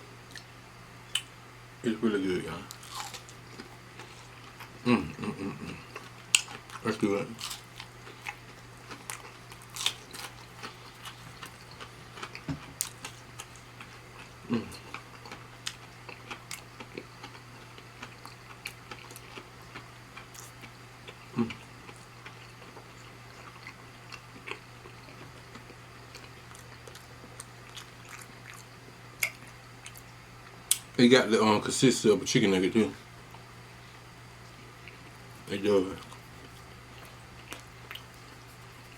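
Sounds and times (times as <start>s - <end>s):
steady low hum: 0.0s - 38.9s
close chewing and biting: 2.7s - 4.8s, 5.6s - 30.0s, 36.0s - 38.9s.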